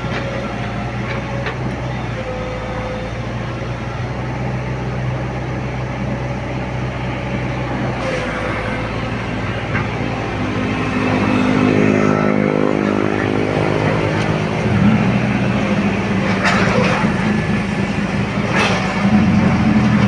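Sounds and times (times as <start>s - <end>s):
excavator diesel engine running: 0.0s - 20.0s
hydraulic rushing bursts: 7.8s - 20.0s.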